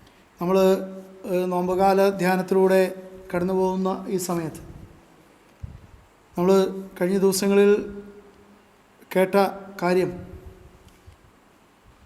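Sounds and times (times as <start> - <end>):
man speaking: 0.4 - 4.8, 6.4 - 8.2, 9.0 - 10.4.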